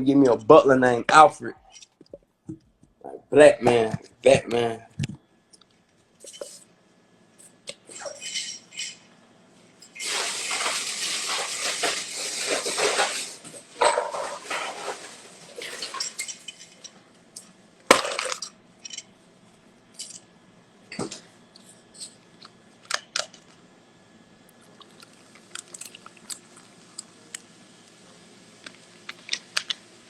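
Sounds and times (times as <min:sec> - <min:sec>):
dishes clinking: 0:07.9 - 0:09.1, 0:13.8 - 0:17.0
water running from a tap: 0:10.0 - 0:13.4.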